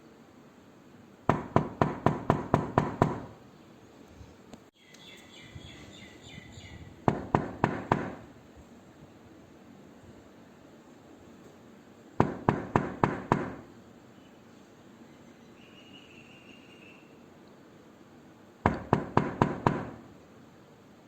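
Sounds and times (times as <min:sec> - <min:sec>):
knuckles knocking on door: 0:01.3 - 0:03.3, 0:07.1 - 0:08.2, 0:12.2 - 0:13.6, 0:18.7 - 0:20.0.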